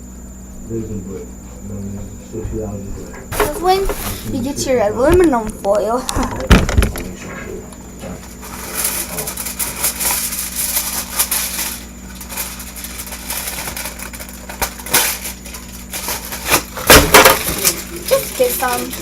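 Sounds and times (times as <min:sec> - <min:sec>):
steady low hum: 0:00.0 - 0:19.0
crinkling being scrunched: 0:08.2 - 0:19.0.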